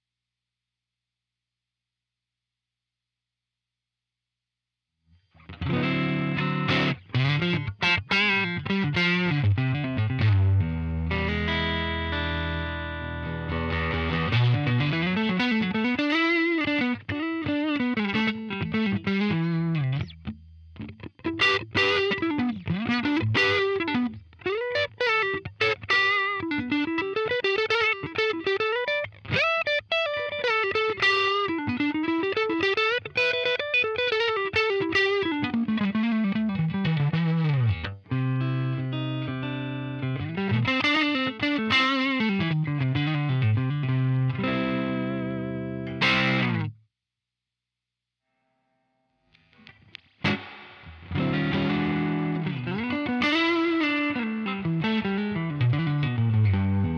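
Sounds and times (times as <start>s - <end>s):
electric guitar held chord: 5.4s - 46.7s, 49.4s - 56.9s
electric guitar melodic lines: 5.4s - 46.8s, 49.4s - 56.9s.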